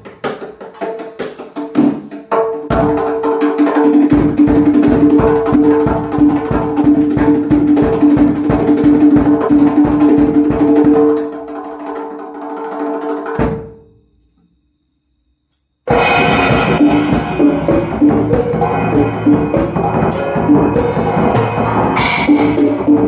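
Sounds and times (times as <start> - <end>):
fast drum strokes: 0.0 - 13.8, 15.9 - 23.0
ringing drum tone: 13.2 - 23.0.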